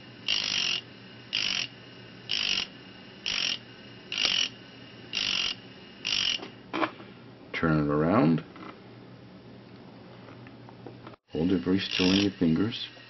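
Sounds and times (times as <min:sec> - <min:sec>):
rotary tool motor humming: 0:00.0 - 0:06.6, 0:11.3 - 0:13.0
drill bit grinding on disc: 0:00.2 - 0:06.5, 0:11.3 - 0:13.0.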